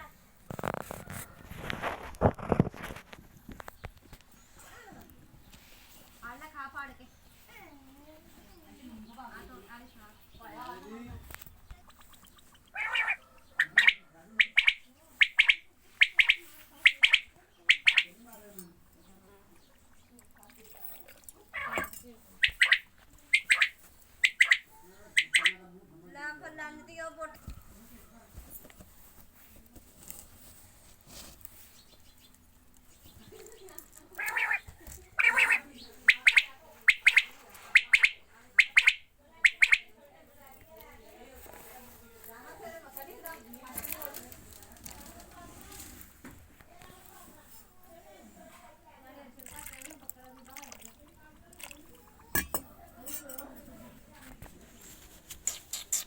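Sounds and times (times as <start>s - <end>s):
quail calling: 11.7s - 18.2s, 21.5s - 25.6s, 34.2s - 39.9s.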